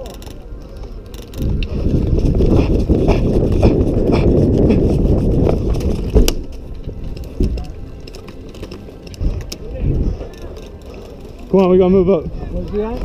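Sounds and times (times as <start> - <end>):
gear rubbing on microphone: 1.0 - 7.4
running footsteps thudding: 1.4 - 7.6.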